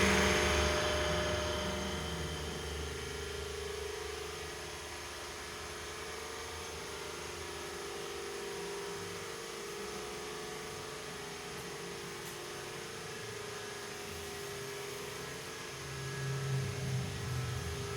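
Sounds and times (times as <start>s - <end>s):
low rumble: 0.0s - 3.2s
mechanical hum: 0.0s - 17.9s.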